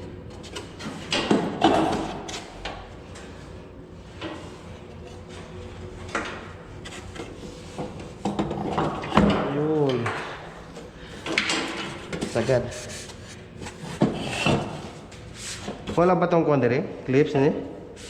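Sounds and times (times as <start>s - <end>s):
knocks and clatter of parts: 0.3s - 3.2s, 7.1s - 12.4s.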